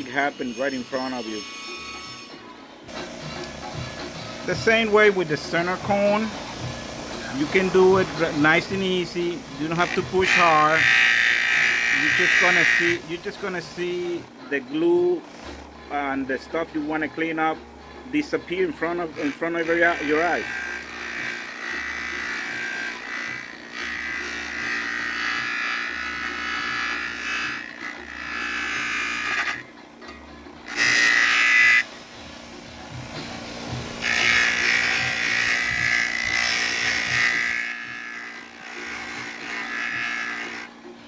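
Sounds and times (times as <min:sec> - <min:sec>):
wire brush scrubbing: 0:00.0 - 0:01.5, 0:02.9 - 0:14.2, 0:18.2 - 0:20.8
grinder motor humming: 0:02.0 - 0:17.1, 0:17.8 - 0:41.0.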